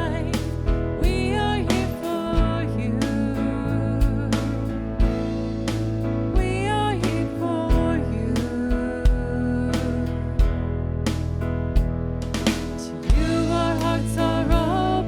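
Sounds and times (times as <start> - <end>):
person singing: 0.0 - 5.3, 6.3 - 10.6, 12.8 - 15.0
band playing worship song: 0.0 - 15.0.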